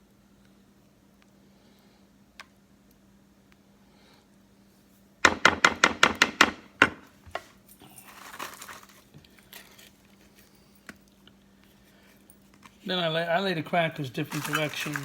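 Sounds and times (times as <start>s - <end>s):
short rustle: 7.4s - 10.8s, 14.2s - 15.0s.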